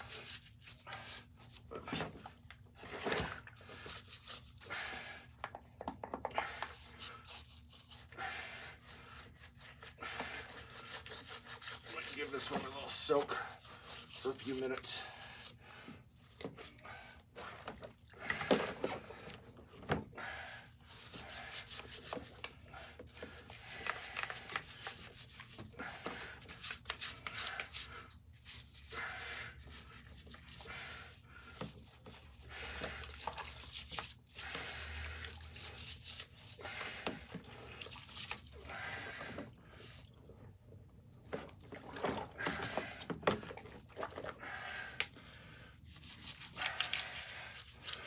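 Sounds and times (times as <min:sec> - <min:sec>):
stiff brush scrubbing metal part: 0:06.6 - 0:15.6, 0:23.3 - 0:37.2, 0:45.8 - 0:48.0.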